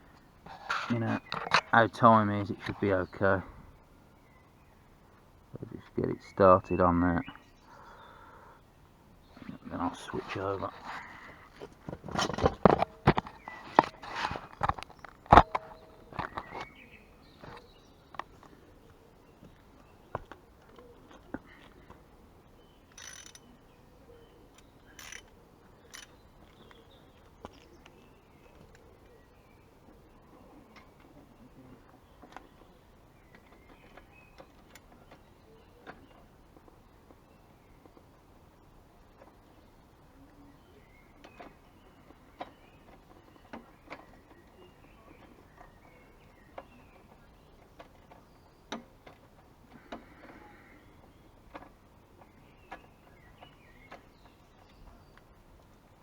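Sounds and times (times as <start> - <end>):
ratchet pawl clicking: 22.9 - 23.4, 25.0 - 25.3.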